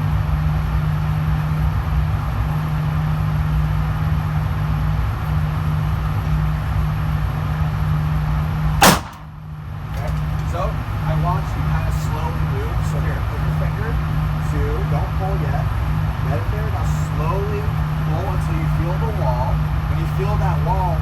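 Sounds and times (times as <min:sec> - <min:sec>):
steady low drone: 0:00.0 - 0:21.0
pistol shot: 0:08.8 - 0:09.4.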